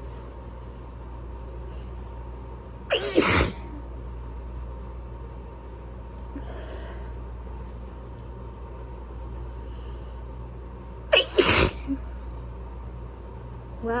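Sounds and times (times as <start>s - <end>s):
low background hum: 0.0s - 14.0s
person sneezing: 2.9s - 3.8s, 11.1s - 12.0s.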